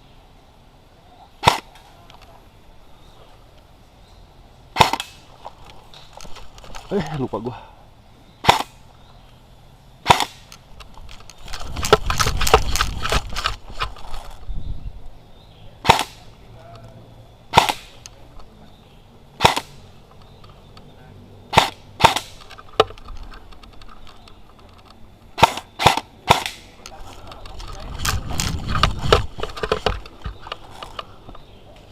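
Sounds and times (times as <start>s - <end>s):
airsoft rifle shots: 1.4s - 1.8s, 4.7s - 5.2s, 8.4s - 8.8s, 10.0s - 10.5s, 15.8s - 16.3s, 17.5s - 18.0s, 19.4s - 19.8s, 21.5s - 22.4s, 25.4s - 26.8s
rifle handling noise: 4.8s - 7.1s, 10.1s - 14.4s, 21.6s - 31.5s.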